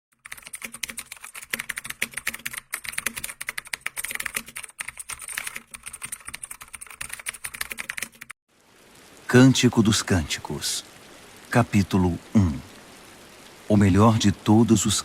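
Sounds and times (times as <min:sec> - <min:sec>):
rapid typing on keyboard: 0:00.1 - 0:08.4.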